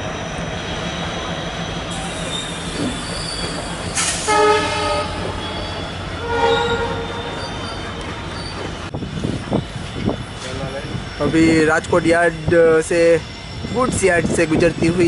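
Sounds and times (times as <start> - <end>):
train rumbling on rails: 0.0 - 15.0
train horn blasts: 4.2 - 5.6, 6.2 - 7.4.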